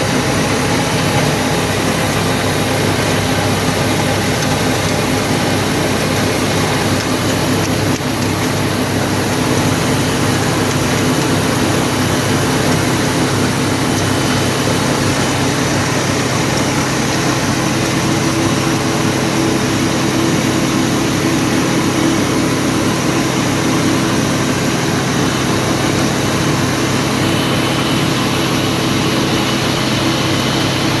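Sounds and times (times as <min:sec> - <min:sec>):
grain cleaning machine droning: 0:00.0 - 0:31.0.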